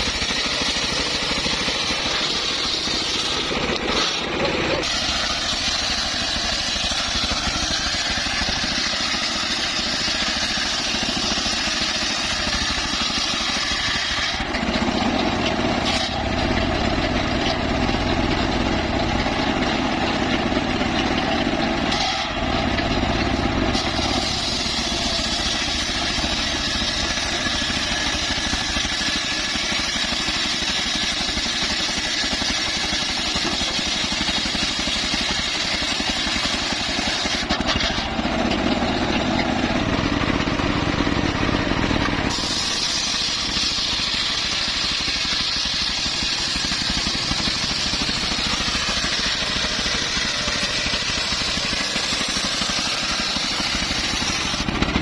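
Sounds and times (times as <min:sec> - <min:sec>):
bandsaw running: 0:00.0 - 0:55.0.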